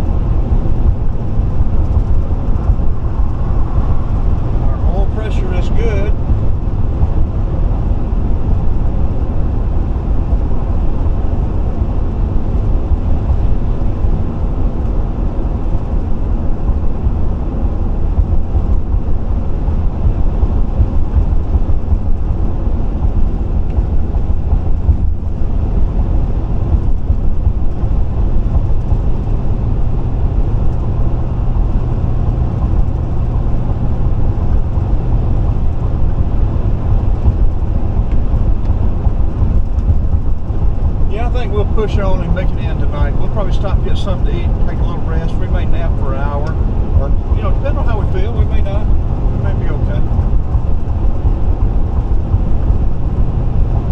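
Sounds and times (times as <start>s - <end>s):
road and engine rumble: 0.0s - 53.9s.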